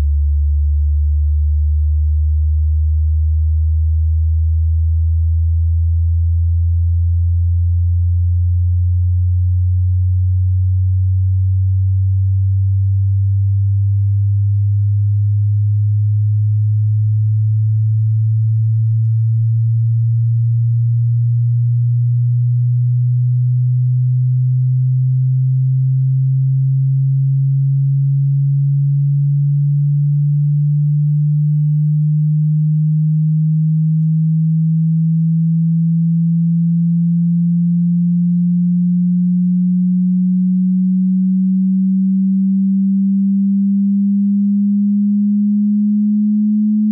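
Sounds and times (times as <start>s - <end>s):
sine tone gliding upward: 18.5s - 46.9s.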